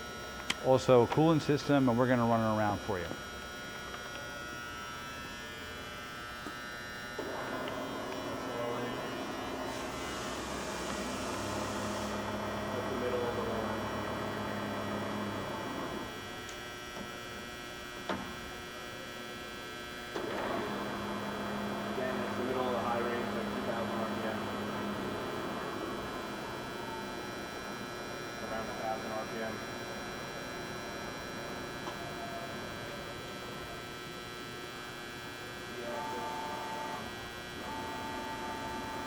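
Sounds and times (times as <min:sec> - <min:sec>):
milling machine electrical hum: 0:00.0 - 0:39.0
milling machine running: 0:04.9 - 0:16.2, 0:20.1 - 0:33.8.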